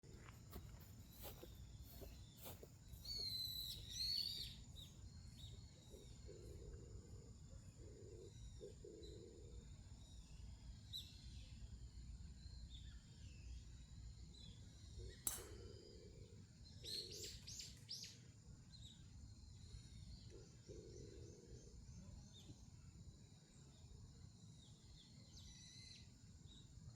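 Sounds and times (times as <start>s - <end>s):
sharp click: 15.2s - 15.7s.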